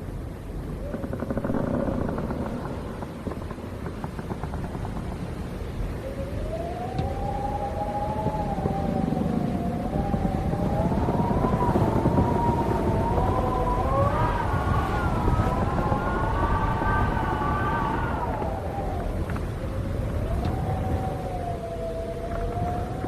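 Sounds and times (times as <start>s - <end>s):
wind howling: 0.0s - 23.0s
wavering wind whistle: 0.6s - 23.0s.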